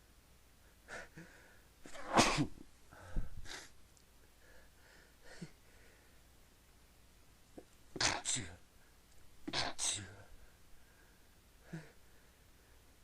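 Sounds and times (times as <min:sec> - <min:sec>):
quiet breaths: 0:00.0 - 0:02.0, 0:02.8 - 0:13.0
person sneezing: 0:01.9 - 0:02.6, 0:08.0 - 0:08.5, 0:09.5 - 0:10.1.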